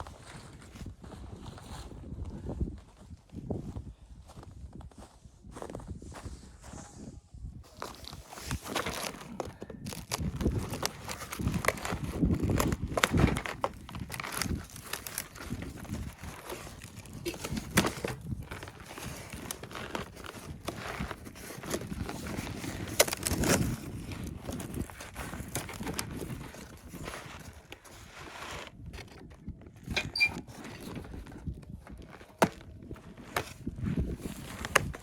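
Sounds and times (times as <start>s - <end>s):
rustling and crinkling: 0.0s - 35.0s.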